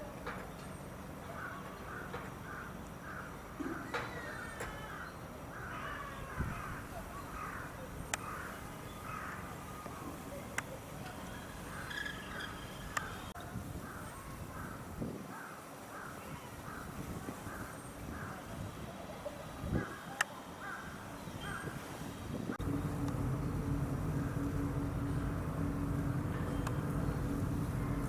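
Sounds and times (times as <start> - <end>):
harsh bird calls: 1.2 - 14.8.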